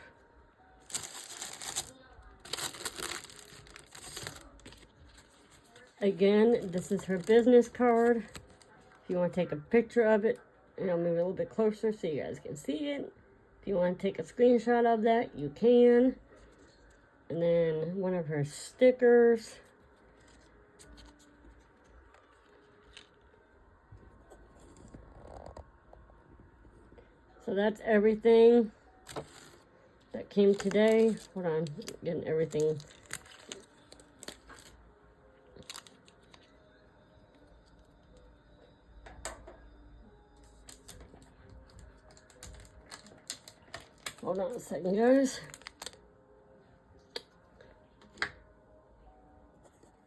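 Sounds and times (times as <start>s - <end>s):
crinkling and rustling: 0.8s - 9.0s, 19.9s - 26.1s, 29.1s - 29.7s, 30.3s - 34.8s, 35.5s - 36.6s, 40.4s - 46.0s.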